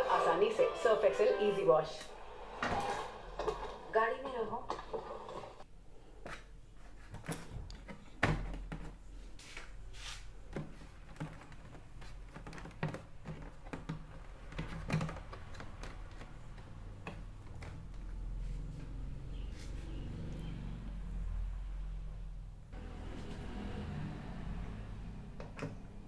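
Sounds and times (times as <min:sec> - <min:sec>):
knocks and clicks of handling: 0:10.5 - 0:18.1.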